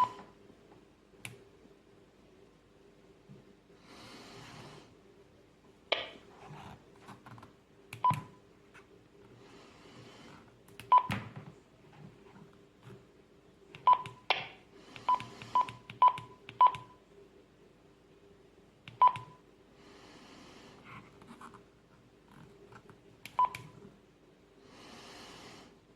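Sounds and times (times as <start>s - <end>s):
radio keypad beeps: 0.0s - 0.2s, 13.9s - 14.2s, 19.0s - 19.4s
button clicks: 5.9s - 6.2s.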